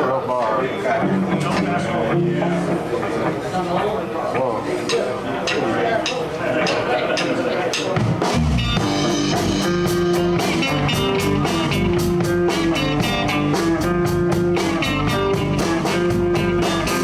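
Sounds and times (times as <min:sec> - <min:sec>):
blues band playing: 0:00.9 - 0:04.0, 0:05.0 - 0:17.0
electric guitar lead with bending notes: 0:01.0 - 0:02.8, 0:08.2 - 0:17.0.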